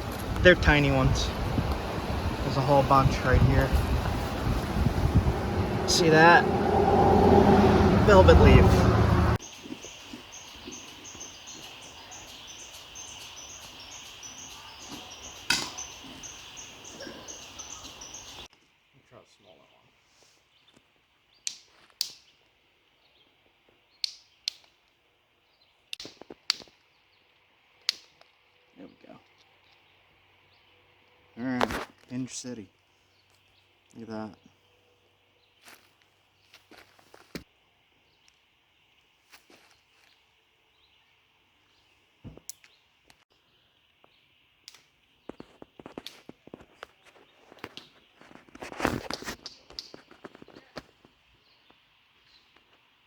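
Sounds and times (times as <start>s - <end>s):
steady high hiss: 0.0s - 6.4s.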